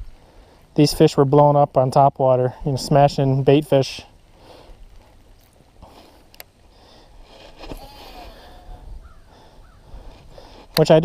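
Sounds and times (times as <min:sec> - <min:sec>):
low wind rumble: 0:02.5 - 0:10.8.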